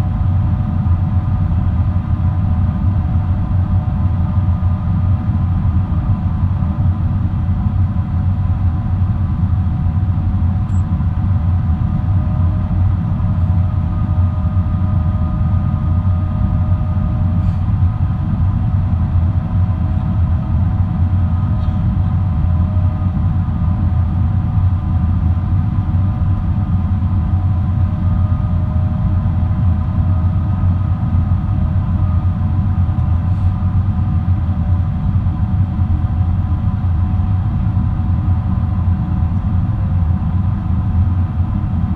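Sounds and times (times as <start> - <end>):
aircraft cabin engine rumble: 0.0 - 41.9
engine tones humming: 10.4 - 41.9.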